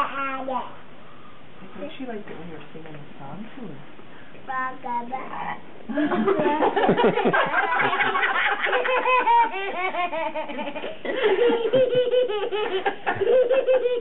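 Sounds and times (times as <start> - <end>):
young child giggling: 6.0 - 14.0.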